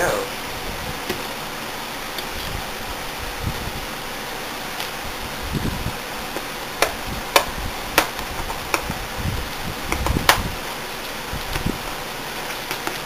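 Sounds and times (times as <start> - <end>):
plastic wrap and card snapping: 12.4 - 13.0.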